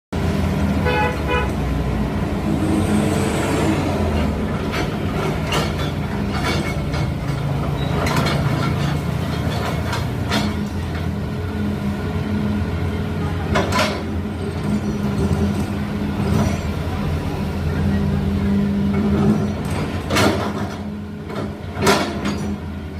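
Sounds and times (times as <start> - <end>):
excavator diesel engine: 0.2 - 22.9
horn toot: 0.8 - 1.6.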